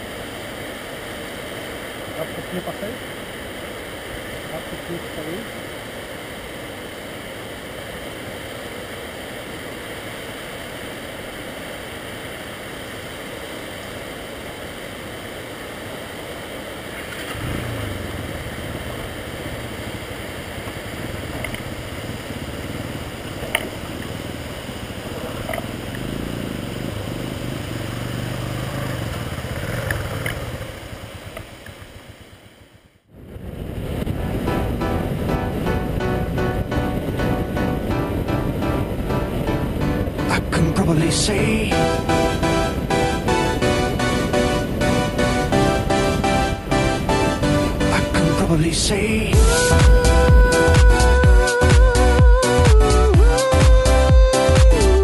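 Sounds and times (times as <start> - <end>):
waterfall rushing: 0.0 - 32.7, 33.5 - 55.0
faint clicks: 21.3 - 21.6.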